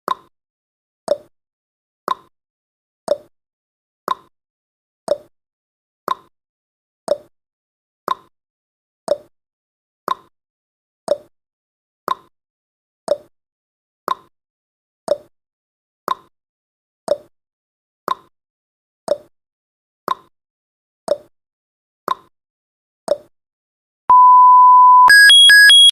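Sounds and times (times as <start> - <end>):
steady loud beep: 24.1 - 25.9
timer ticking: 24.1 - 25.9.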